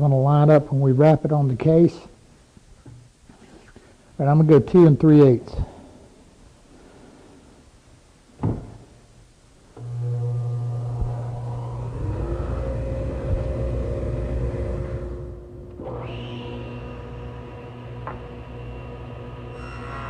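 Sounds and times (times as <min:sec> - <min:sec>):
knock: 0:08.4 - 0:08.8
table saw motor humming: 0:09.8 - 0:20.0.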